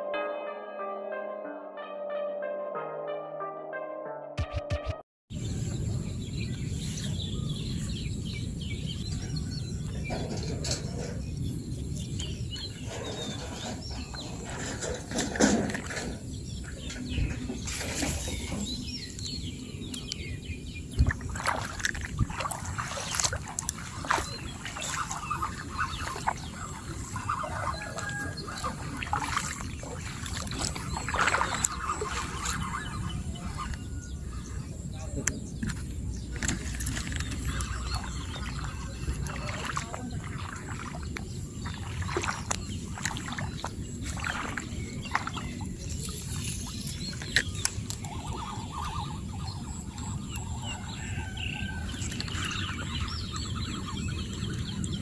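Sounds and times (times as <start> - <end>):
knocks and clicks: 4.4 - 5.0
bird calls: 5.4 - 55.0.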